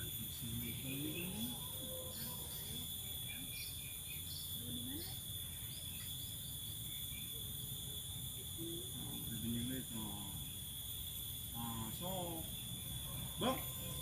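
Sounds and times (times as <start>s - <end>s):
insects buzzing: 0.0s - 14.0s.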